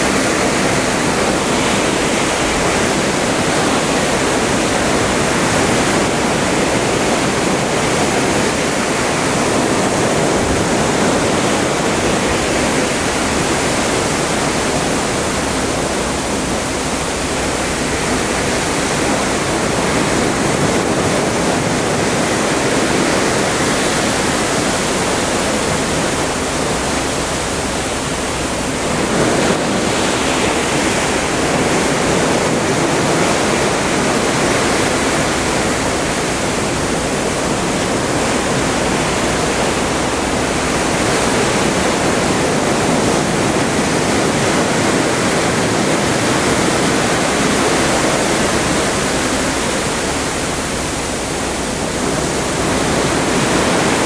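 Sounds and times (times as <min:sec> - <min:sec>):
water rushing past ship: 0:00.0 - 0:54.0.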